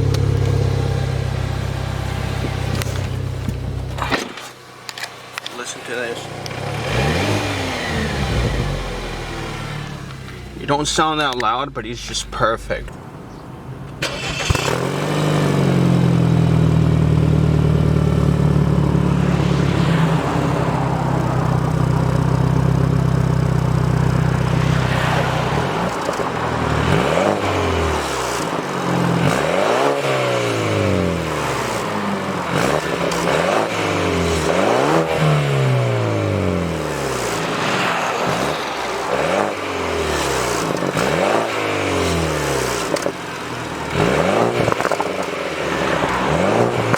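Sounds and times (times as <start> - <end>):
car engine revving: 0.0 - 46.9.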